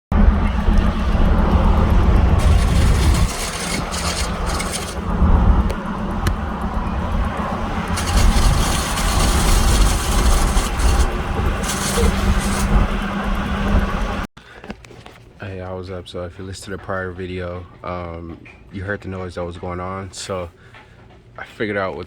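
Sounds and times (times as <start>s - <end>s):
pickup truck engine and road rumble: 0.1s - 14.3s
hissing scraping noise: 0.7s - 5.1s, 7.9s - 13.0s.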